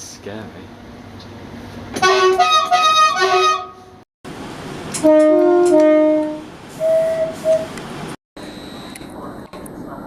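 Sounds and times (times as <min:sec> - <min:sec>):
two-tone train air horn: 0:02.0 - 0:03.9, 0:05.0 - 0:07.6.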